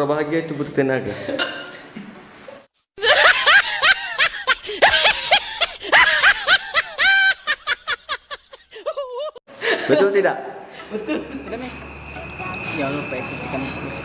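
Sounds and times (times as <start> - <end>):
high-pitched laughter: 3.0 - 9.4.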